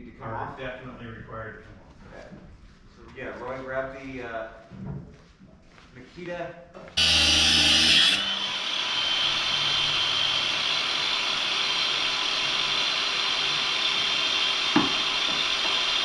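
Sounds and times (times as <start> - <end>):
power tool cutting metal: 7.0 - 16.0.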